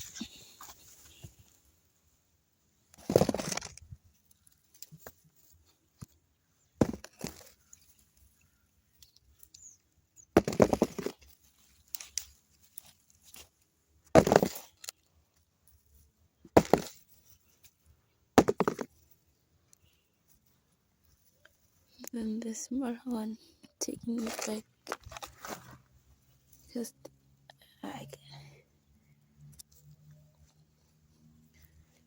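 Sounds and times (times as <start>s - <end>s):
soil scraping and tearing by hand: 3.0s - 5.8s, 9.0s - 15.0s, 24.0s - 25.9s.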